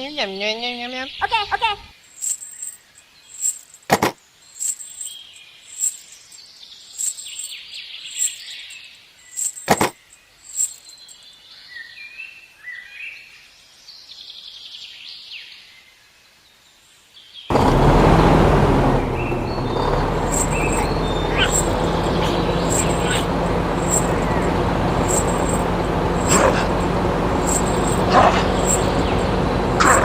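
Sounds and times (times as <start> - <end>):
small birds chirping: 0.0 - 17.6, 18.9 - 30.0
loud steady rushing noise: 20.2 - 30.0.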